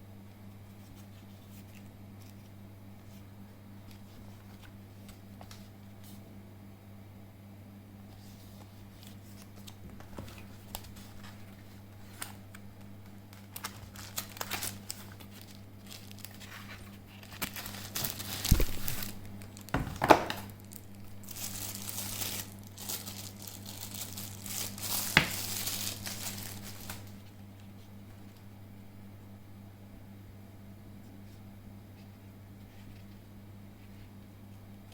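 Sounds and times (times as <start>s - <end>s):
low steady hum: 0.0s - 34.9s
plastic packaging crinkling: 8.9s - 27.4s.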